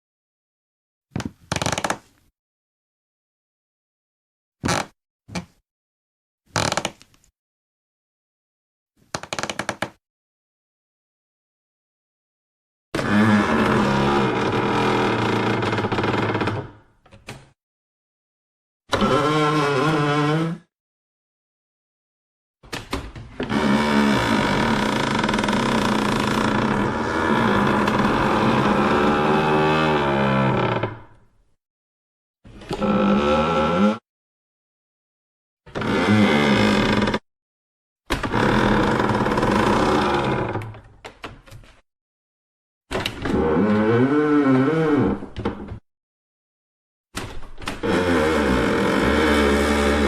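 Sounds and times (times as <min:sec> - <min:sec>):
wooden floorboard creaking: 0:01.1 - 0:02.0, 0:04.6 - 0:05.5, 0:06.5 - 0:07.0, 0:09.1 - 0:10.0, 0:18.9 - 0:20.6, 0:23.4 - 0:31.1, 0:35.7 - 0:37.2, 0:38.1 - 0:40.7, 0:47.6 - 0:50.0.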